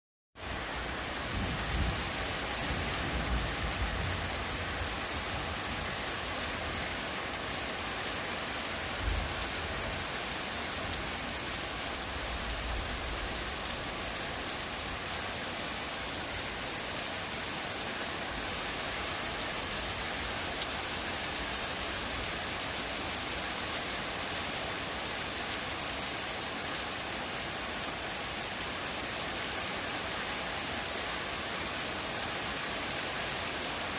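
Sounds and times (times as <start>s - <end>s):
heavy rain falling: 0.4s - 33.9s.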